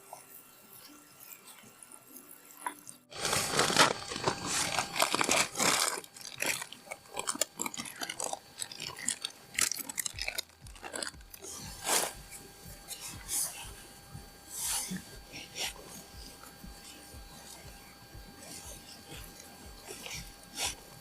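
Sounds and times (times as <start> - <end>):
person chewing crunchy food: 2.6 - 21.0.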